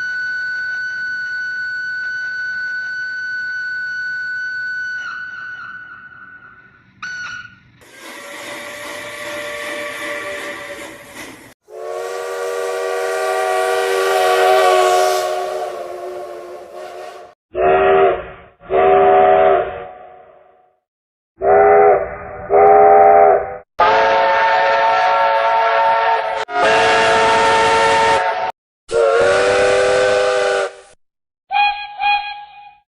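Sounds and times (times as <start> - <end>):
steam locomotive whistle: 7.8 - 19.9, 21.4 - 32.8.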